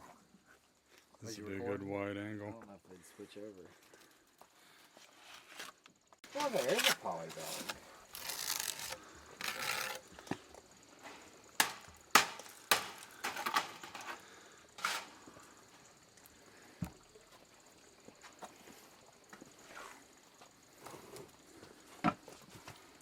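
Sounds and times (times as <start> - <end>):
sharp knocks and clatters: 11.6 - 14.2.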